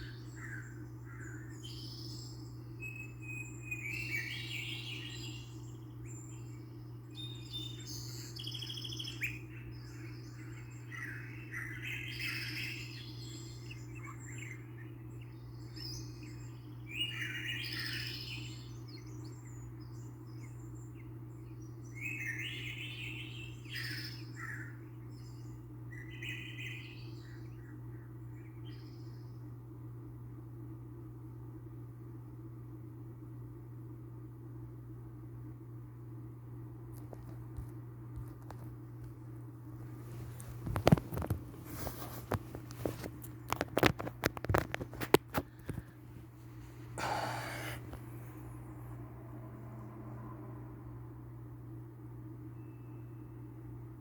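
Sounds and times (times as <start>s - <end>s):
bird chirping: 0.0s - 29.4s, 52.2s - 53.7s
steady low hum: 0.0s - 54.0s.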